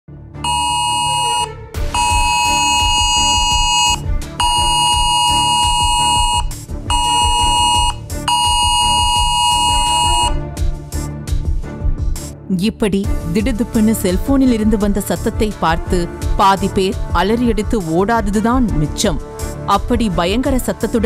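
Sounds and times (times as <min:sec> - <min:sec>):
harsh two-pitch electronic alarm: 0:00.5 - 0:10.4.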